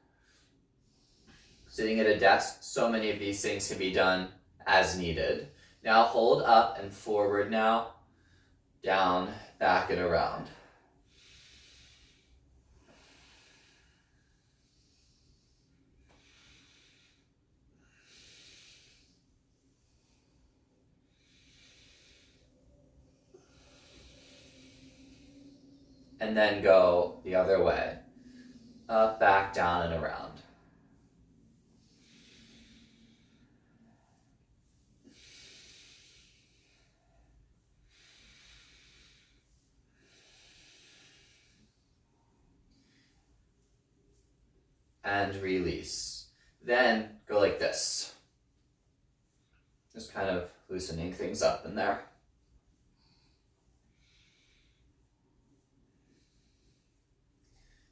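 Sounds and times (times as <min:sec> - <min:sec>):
person breathing softly: 0:00.0 - 0:01.7, 0:10.5 - 0:29.7, 0:30.3 - 0:45.0, 0:52.1 - 0:57.9.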